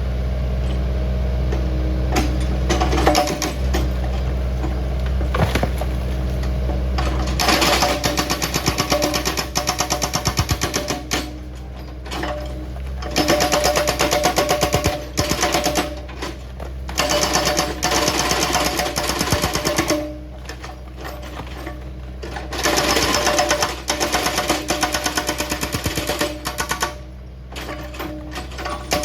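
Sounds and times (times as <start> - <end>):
machine engine humming: 0.0 - 29.0
hydraulic breaker pounding rock: 1.5 - 29.0.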